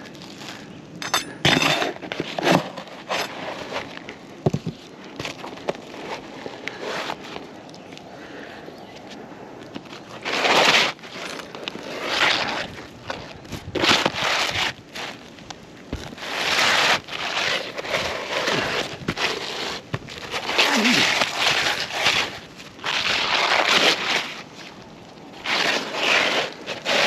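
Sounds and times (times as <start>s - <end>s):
roof shingles scraping and crackling: 1.5s - 8.6s, 9.7s - 27.0s.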